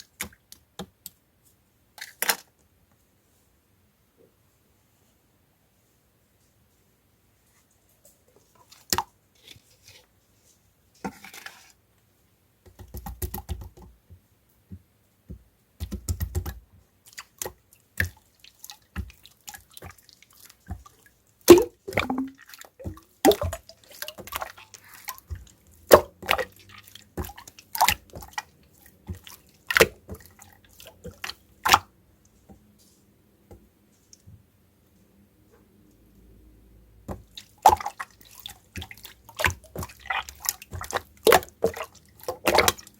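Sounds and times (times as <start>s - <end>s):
slime squishing wet pops: 15.8s - 31.9s, 37.1s - 42.9s
dull thumps: 21.5s - 24.4s.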